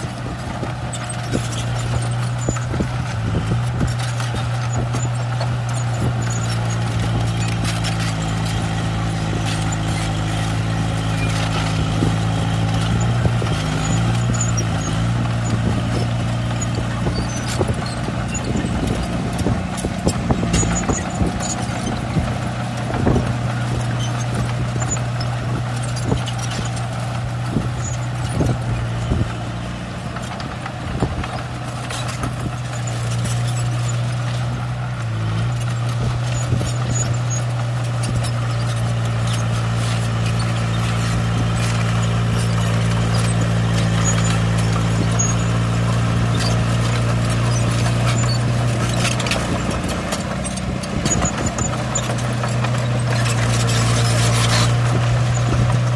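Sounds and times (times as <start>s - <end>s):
bulldozer diesel engine under load: 0.0s - 55.9s
rock being pushed: 0.0s - 55.9s.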